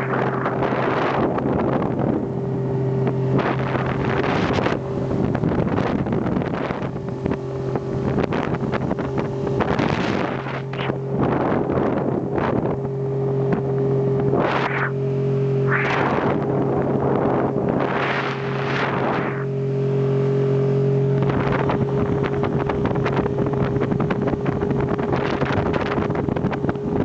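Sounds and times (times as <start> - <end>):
outboard motor droning: 0.0 - 27.0
wind gusts on microphone: 0.0 - 27.0.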